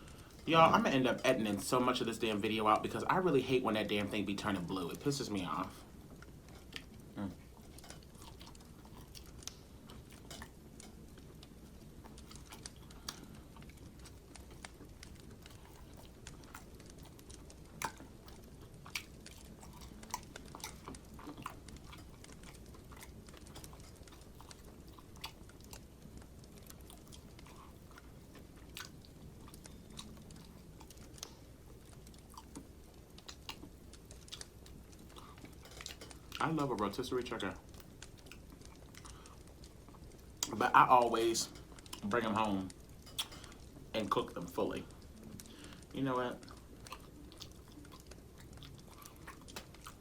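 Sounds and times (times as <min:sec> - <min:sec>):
person chewing: 0:06.1 - 0:36.4, 0:37.6 - 0:40.6, 0:42.7 - 0:43.8, 0:45.0 - 0:50.0
mouth smacks and clicks: 0:43.1 - 0:43.6.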